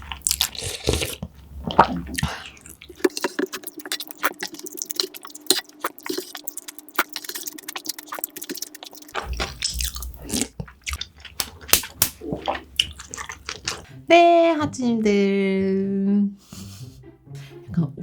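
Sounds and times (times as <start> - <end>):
chewing and crunching: 0.0 - 13.9
wet mouth clicks: 0.0 - 13.9.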